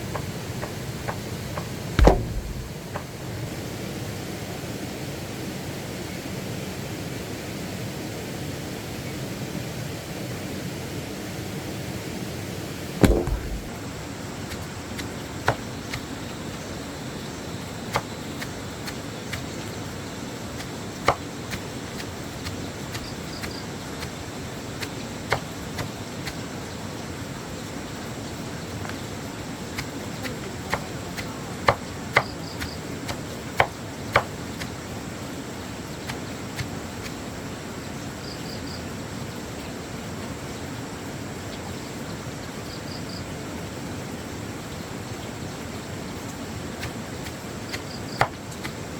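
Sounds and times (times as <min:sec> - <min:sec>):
steady background hiss: 0:00.0 - 0:48.9
sharp knocks: 0:02.0 - 0:03.1, 0:13.0 - 0:13.8.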